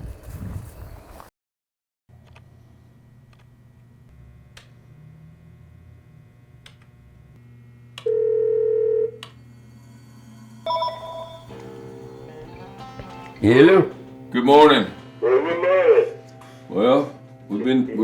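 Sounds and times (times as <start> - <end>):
phone ringback tone: 8.1 - 9.2, 10.7 - 12.6.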